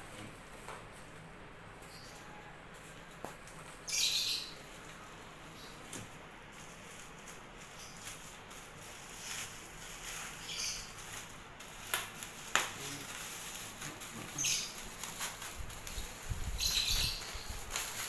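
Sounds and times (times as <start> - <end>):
plastic packaging crinkling: 6.5 - 18.0.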